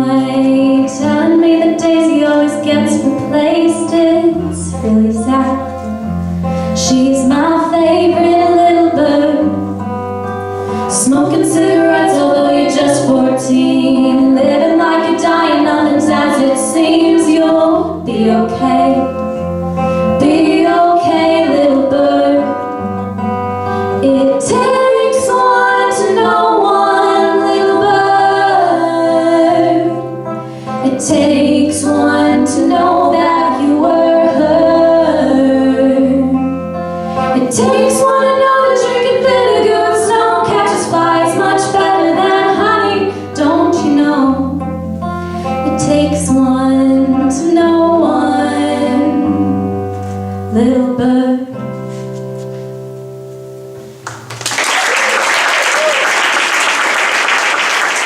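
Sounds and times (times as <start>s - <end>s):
woman singing: 0.0s - 6.0s, 6.7s - 9.8s, 10.7s - 19.4s, 20.0s - 23.0s, 23.9s - 49.9s, 50.5s - 51.7s
acoustic guitar: 0.0s - 54.4s
audience applause: 54.0s - 58.0s.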